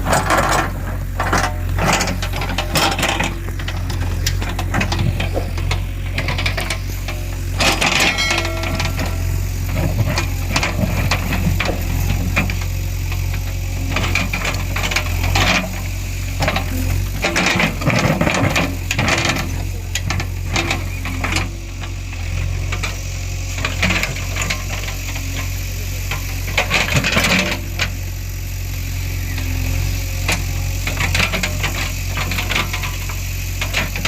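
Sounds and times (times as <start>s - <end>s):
machine rattling and clanking: 0.0s - 22.0s
diesel engine running: 0.0s - 34.0s.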